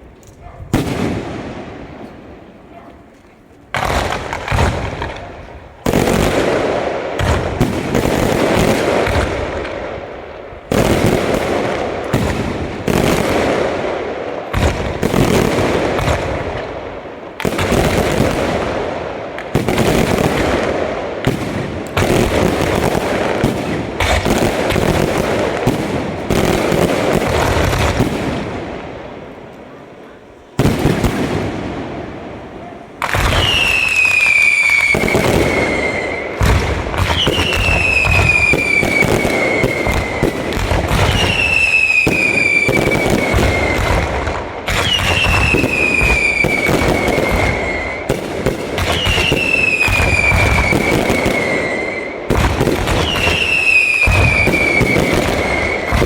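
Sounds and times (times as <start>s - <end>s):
fireworks crackle: 0.0s - 13.8s, 33.0s - 56.0s
fireworks bursting with loud bangs: 0.0s - 56.0s.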